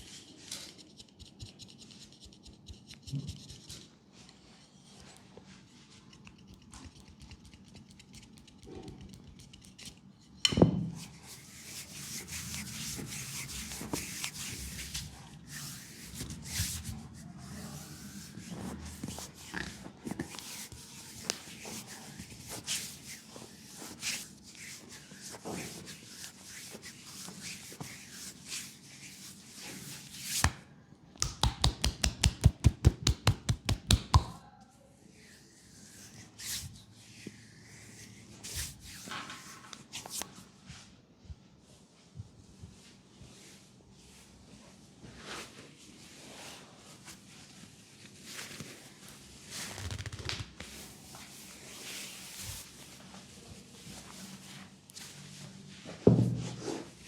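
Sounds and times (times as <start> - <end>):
rubbing on skin: 11.2 - 30.5.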